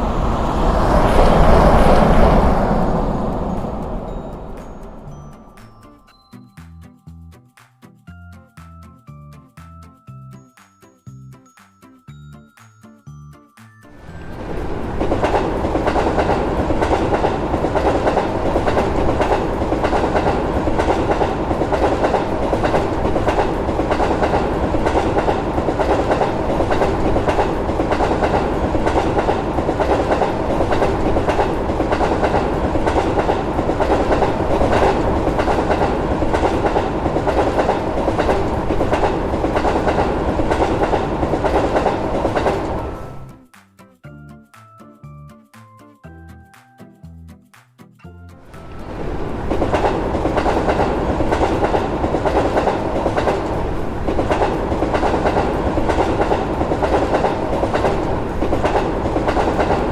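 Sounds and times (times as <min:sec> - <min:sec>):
train wheels clattering over rails: 0:14.0 - 0:43.3, 0:48.6 - 0:59.9.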